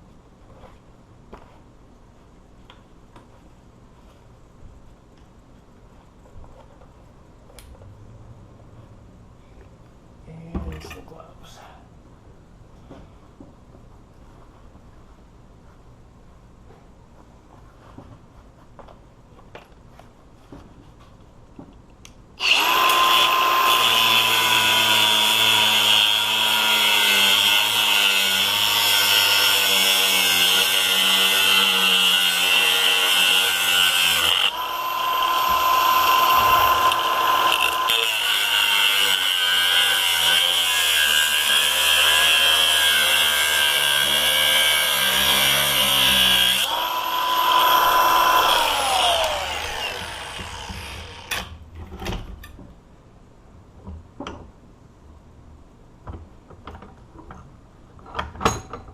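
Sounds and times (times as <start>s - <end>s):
cutoff wheel cutting steel: 22.4s - 51.5s.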